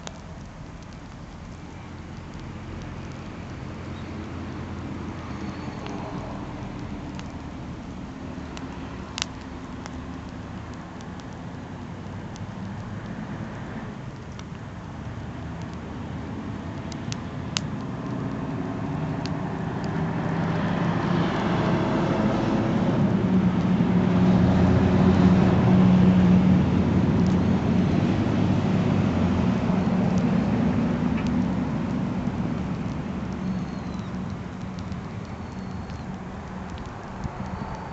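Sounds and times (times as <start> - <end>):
campfire crackles: 0.0 - 37.9
vehicle engine passing by: 17.9 - 33.4.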